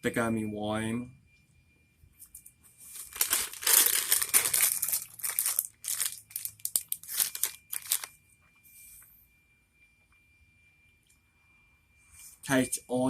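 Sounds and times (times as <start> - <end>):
plastic snack bag crinkling: 2.9 - 8.1.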